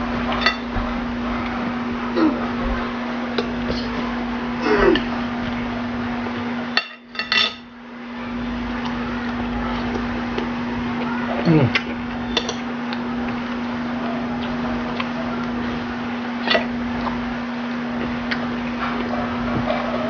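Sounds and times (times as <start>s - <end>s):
steady hum: 0.0s - 20.0s
cutlery clinking against a bowl: 6.8s - 7.7s, 12.3s - 12.7s.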